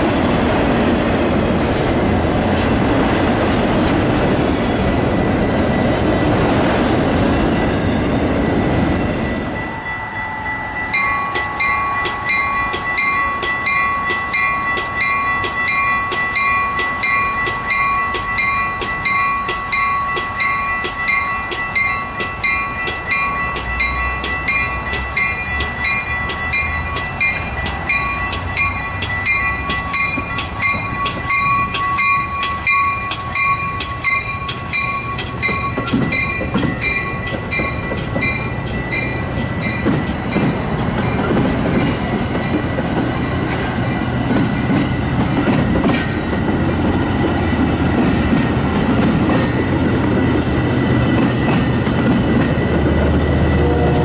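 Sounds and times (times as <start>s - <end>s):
train rumble and wheel clatter: 0.0s - 54.0s
railroad crossing bell dinging: 4.2s - 54.0s.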